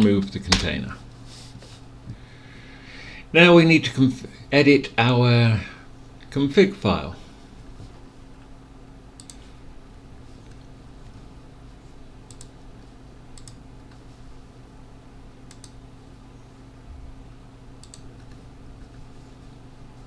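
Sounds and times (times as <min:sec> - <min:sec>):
computer mouse clicking: 0:09.2 - 0:09.4, 0:12.3 - 0:12.6, 0:13.4 - 0:13.6, 0:15.5 - 0:15.8, 0:17.8 - 0:18.4.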